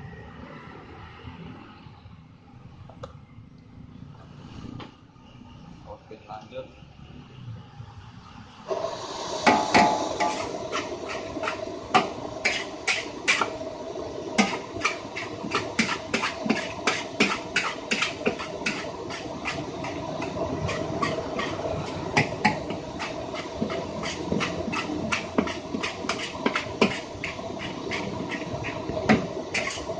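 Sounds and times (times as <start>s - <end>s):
sizzling hiss: 8.7s - 29.9s
metal spatula scraping a wok: 9.4s - 13.5s, 14.4s - 29.9s.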